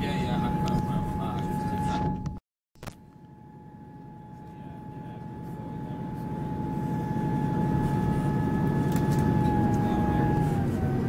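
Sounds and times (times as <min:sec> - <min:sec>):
diesel train running: 0:04.7 - 0:11.0.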